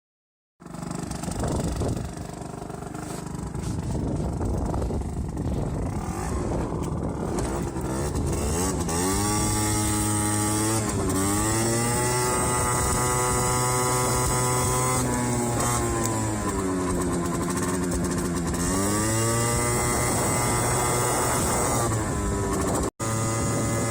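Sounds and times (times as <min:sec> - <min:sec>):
two-stroke scooter engine revving: 0:00.6 - 0:23.9.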